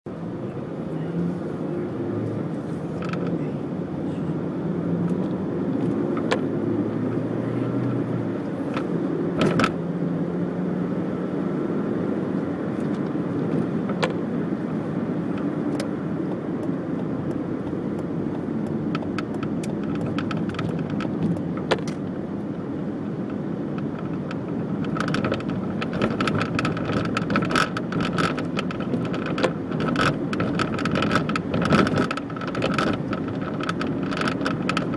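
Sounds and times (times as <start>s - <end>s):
car engine running: 0.1s - 34.9s
plastic rattle: 23.8s - 34.9s.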